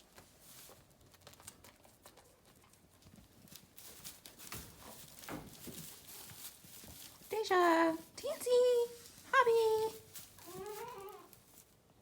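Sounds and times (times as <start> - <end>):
footsteps and shuffles on ground: 3.2 - 11.8.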